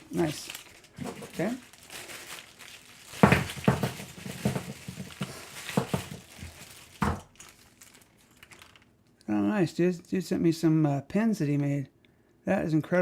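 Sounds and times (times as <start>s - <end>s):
packaging rustling and crinkling: 0.0s - 9.2s.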